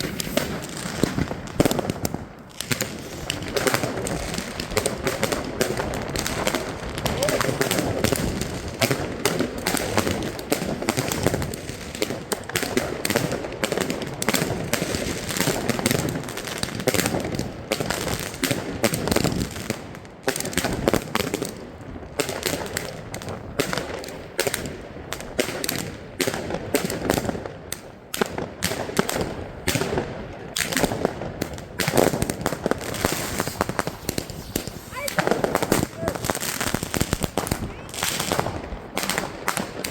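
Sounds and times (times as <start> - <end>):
fireworks banging and crackling: 0.0 - 39.9.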